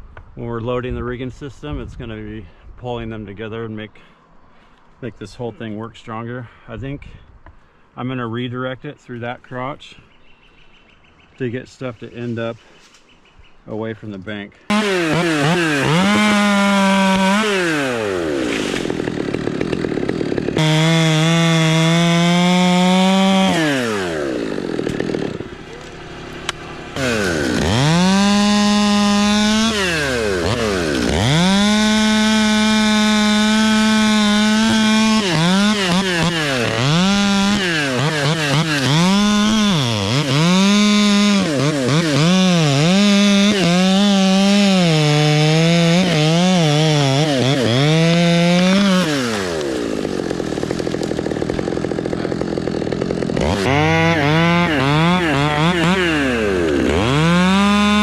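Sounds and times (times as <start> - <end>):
chainsaw revving: 14.7 - 58.0.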